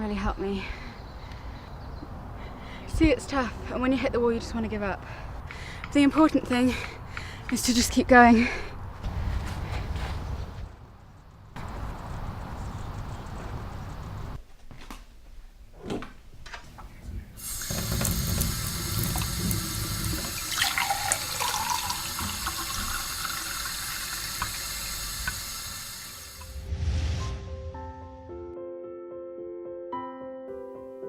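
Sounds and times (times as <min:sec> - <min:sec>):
tap water running into sink: 0:17.4 - 0:26.5.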